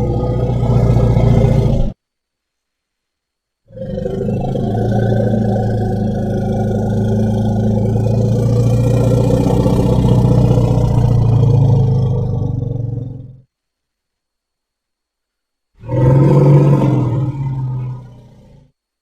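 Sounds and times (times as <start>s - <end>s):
elephant rumbling: 0.0s - 2.0s, 3.7s - 13.5s, 15.8s - 18.8s.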